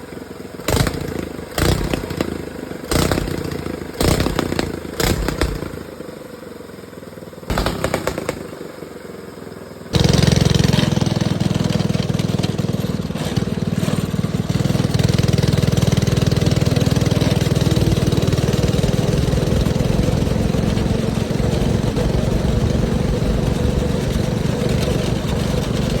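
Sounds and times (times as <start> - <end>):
go-kart engine running: 0.0 - 26.0
go-kart engine cranking: 0.6 - 6.3, 9.9 - 26.0.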